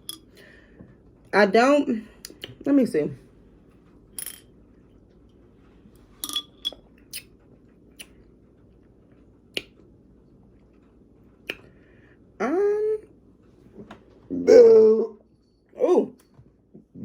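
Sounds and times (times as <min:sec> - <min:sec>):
mouth clicks and lip smacks: 0:02.2 - 0:02.6, 0:06.7 - 0:08.2, 0:09.5 - 0:09.9, 0:11.4 - 0:11.8.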